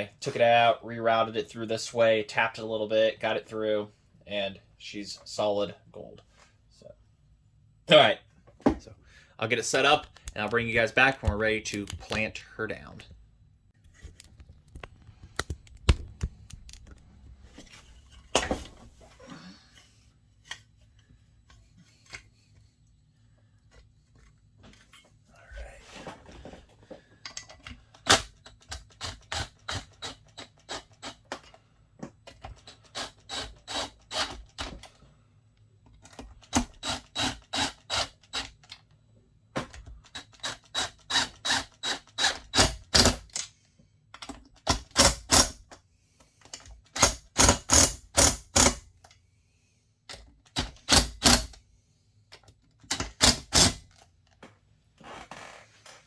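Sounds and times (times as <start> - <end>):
ratchet wrench clicking: 47.0 - 48.8, 50.8 - 51.6.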